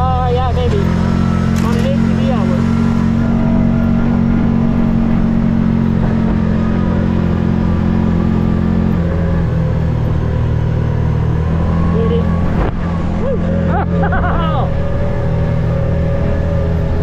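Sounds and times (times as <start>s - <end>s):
utility vehicle engine running: 0.0s - 17.0s.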